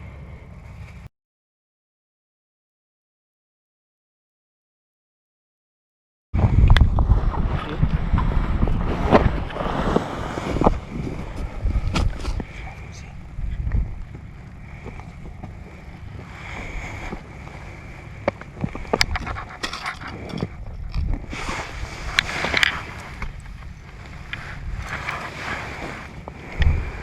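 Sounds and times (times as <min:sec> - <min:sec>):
wind buffeting microphone: 0:06.4 - 0:27.0.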